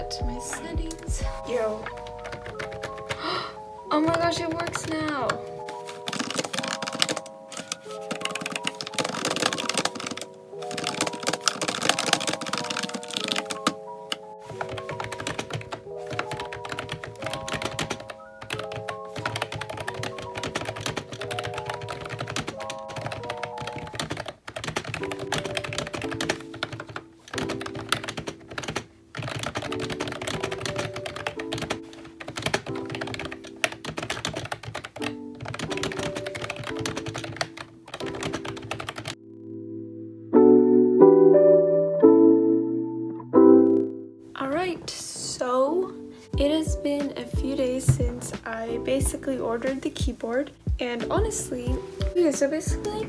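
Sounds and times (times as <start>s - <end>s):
background music chords: 0.0s - 53.0s
keyboard keys clacking: 0.0s - 53.0s.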